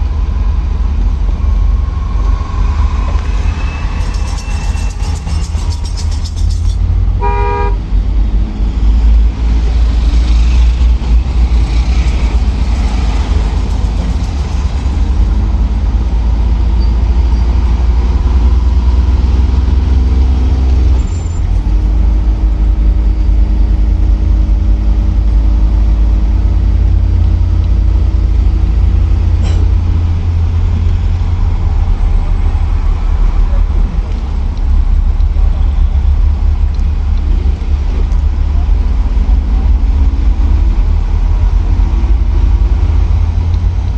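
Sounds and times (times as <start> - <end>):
minibus engine rumbling: 0.0 - 43.9
horn toot: 7.2 - 7.8.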